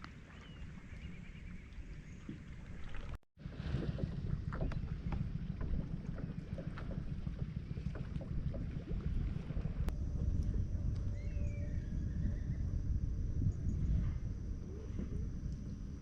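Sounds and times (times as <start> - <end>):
wind buffeting microphone: 3.4 - 16.0
faint clicks and ticks: 4.0 - 12.7, 15.0 - 16.0.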